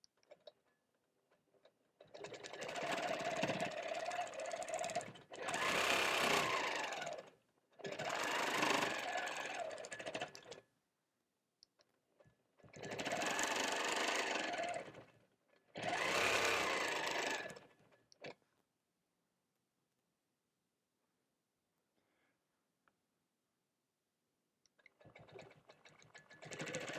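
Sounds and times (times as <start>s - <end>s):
quilting machine stitching: 1.6s - 10.7s, 12.6s - 18.4s, 24.8s - 26.9s.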